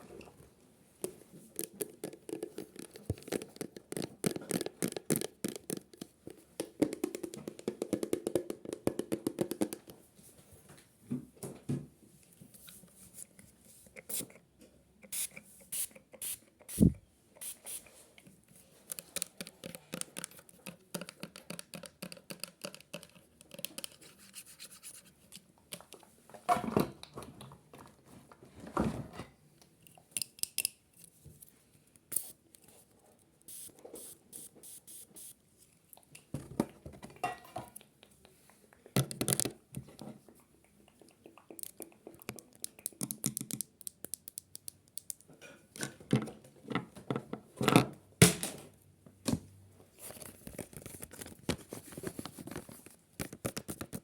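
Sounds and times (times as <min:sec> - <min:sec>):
objects being handled: 0:00.0 - 0:10.5, 0:49.3 - 0:54.0.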